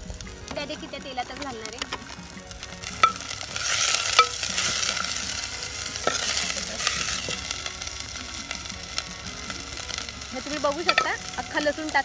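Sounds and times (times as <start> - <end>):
food sizzling in hot oil: 0.0 - 12.0
spoon knocking against pot: 10.8 - 11.2.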